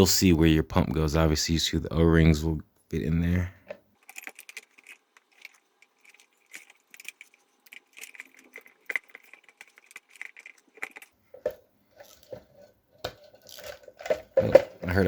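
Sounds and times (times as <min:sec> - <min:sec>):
plastic and metal parts clicking: 0:04.0 - 0:14.8.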